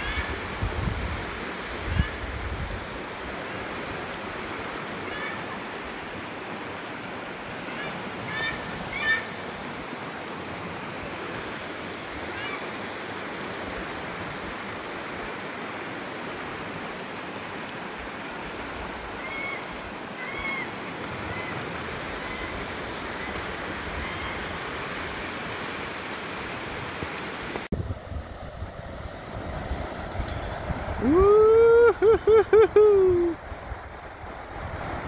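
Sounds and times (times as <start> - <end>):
river water rushing: 0.0 - 35.0
short bird calls: 7.7 - 9.5.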